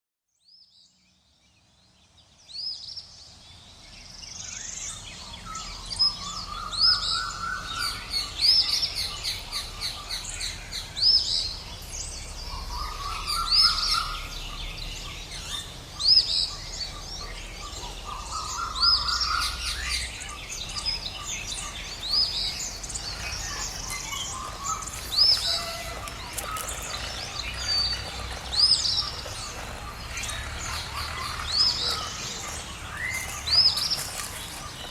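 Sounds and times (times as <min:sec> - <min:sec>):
birds chirping: 0:00.6 - 0:34.9
bird warbling: 0:17.8 - 0:34.7.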